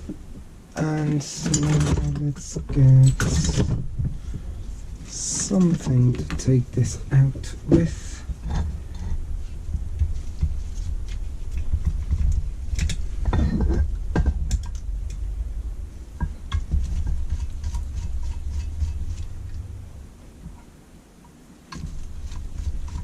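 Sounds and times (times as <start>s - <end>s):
tools and metal parts clattering: 1.0s - 3.9s, 11.6s - 14.9s.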